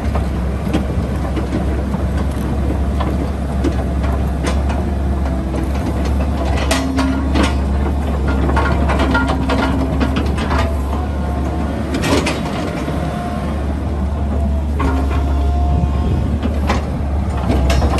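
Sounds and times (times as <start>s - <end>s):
excavator diesel engine running: 0.0s - 17.9s
sharp metallic clanks: 6.4s - 10.7s.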